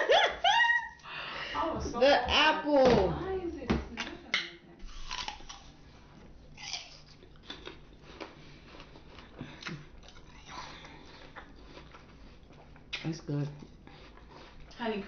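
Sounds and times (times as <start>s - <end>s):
apple crunching: 4.8s - 14.8s.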